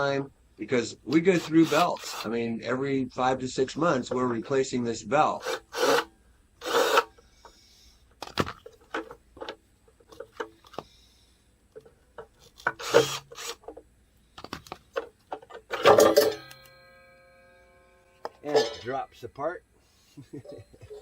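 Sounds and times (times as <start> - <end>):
parts knocking and scraping: 5.4 - 11.0, 11.7 - 16.8, 18.1 - 19.3.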